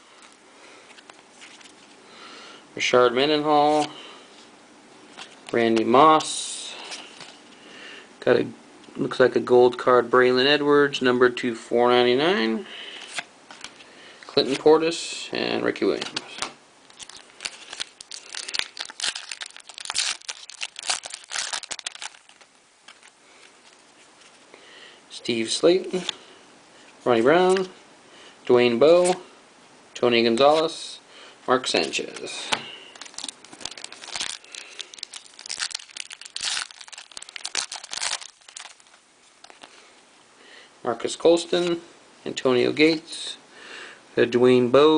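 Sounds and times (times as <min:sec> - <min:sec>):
wrapper crinkling and tearing: 0:16.8 - 0:24.3, 0:32.9 - 0:39.8.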